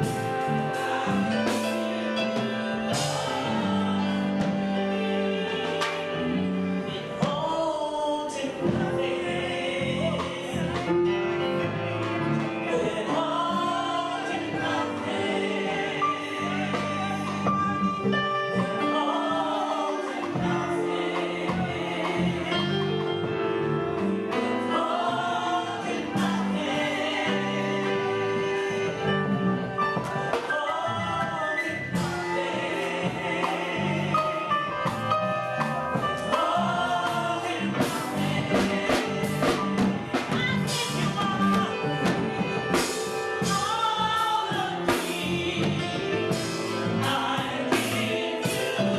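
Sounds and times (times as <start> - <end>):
gospel singing: 0.0 - 48.9
sustained instrumental accompaniment: 0.0 - 48.9.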